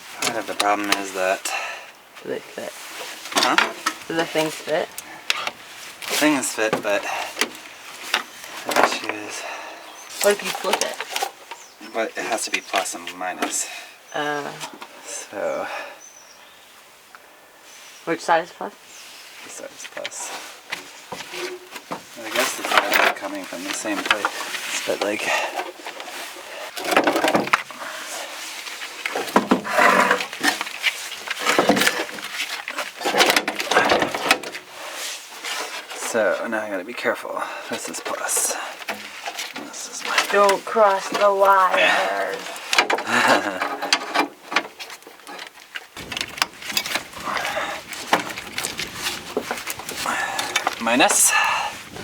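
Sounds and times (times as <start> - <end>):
battery cables clicking and scraping: 38.8 - 51.2.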